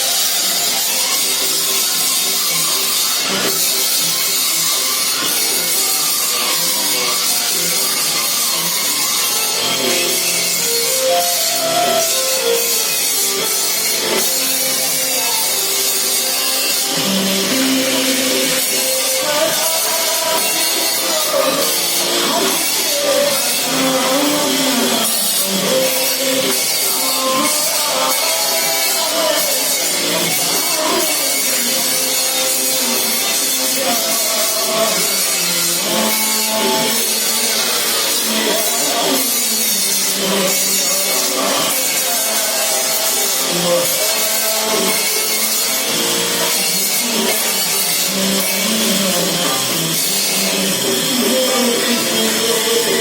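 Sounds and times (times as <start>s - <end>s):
melody over high-frequency wash: 8.8s - 35.4s.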